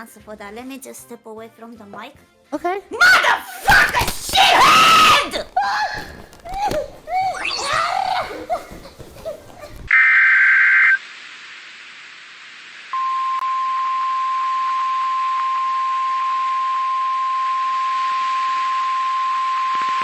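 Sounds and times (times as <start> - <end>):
radio static hiss: 9.9 - 13.0.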